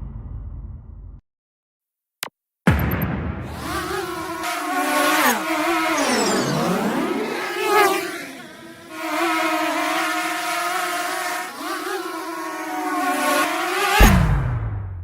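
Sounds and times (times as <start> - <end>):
buzzy engine-like drone: 3.5 - 14.2.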